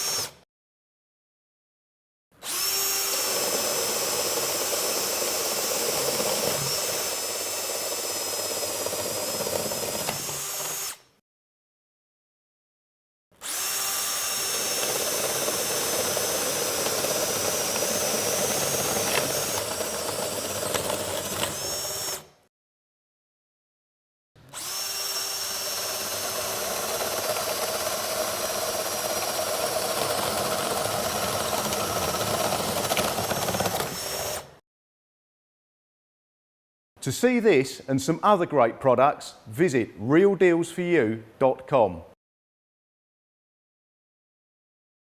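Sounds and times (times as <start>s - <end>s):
drill bit cutting wood: 0.0s - 0.4s, 2.4s - 11.1s, 13.4s - 22.4s, 24.5s - 34.6s
power drill motor whine: 0.0s - 0.4s, 2.4s - 11.1s, 13.4s - 22.4s, 24.5s - 34.6s.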